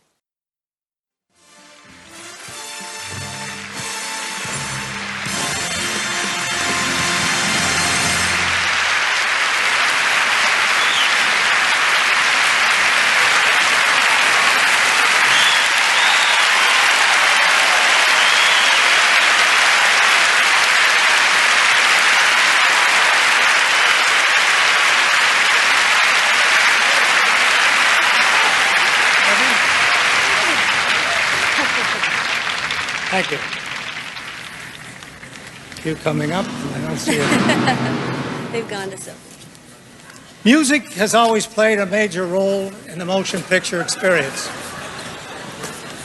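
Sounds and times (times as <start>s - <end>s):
audience applauding: 2.4s - 38.8s
short whistles: 10.8s - 11.2s, 15.3s - 16.5s, 18.2s - 18.9s.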